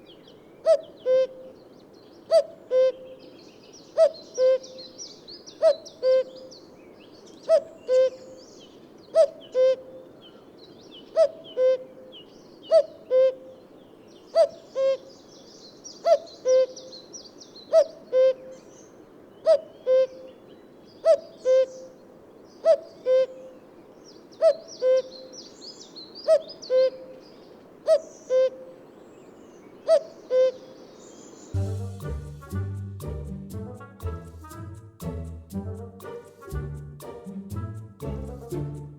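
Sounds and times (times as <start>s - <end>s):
cuckoo calling: 0.6s - 1.6s, 2.3s - 3.2s, 4.0s - 4.9s, 5.5s - 6.5s, 7.4s - 8.4s, 9.1s - 10.0s, 11.1s - 11.9s, 12.7s - 13.6s, 17.7s - 18.7s, 19.4s - 20.4s, 21.0s - 22.0s, 22.6s - 23.5s, 24.4s - 25.3s, 26.2s - 27.2s, 27.9s - 28.7s, 29.8s - 30.8s.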